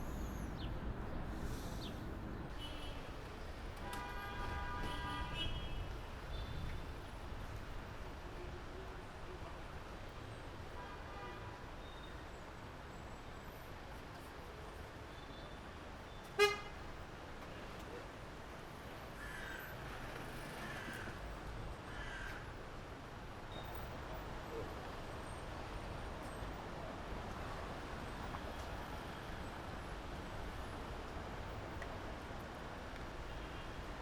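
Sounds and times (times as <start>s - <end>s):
low traffic rumble: 0.0s - 9.8s
car horn toot: 3.9s - 5.8s, 16.4s - 16.7s.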